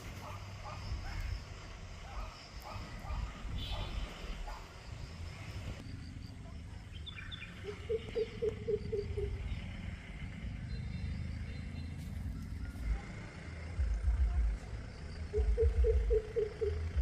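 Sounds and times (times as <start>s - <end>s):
animal hooting: 7.6s - 9.5s, 15.3s - 17.0s
low rumble: 9.0s - 17.0s.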